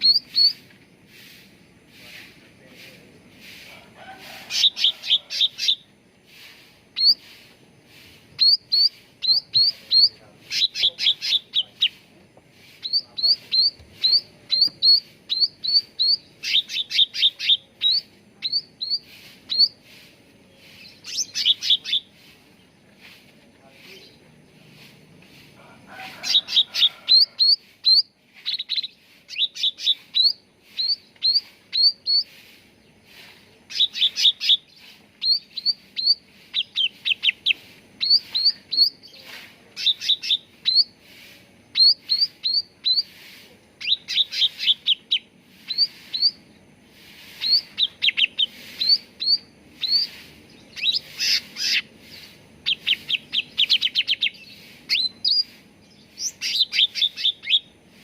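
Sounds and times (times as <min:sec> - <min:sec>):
songbird whistled notes: 0:00.0 - 0:00.7, 0:04.5 - 0:07.4, 0:08.4 - 0:12.0, 0:12.7 - 0:20.0, 0:20.6 - 0:22.4, 0:26.3 - 0:32.4, 0:33.1 - 0:41.0, 0:41.7 - 0:46.5, 0:47.2 - 0:57.7.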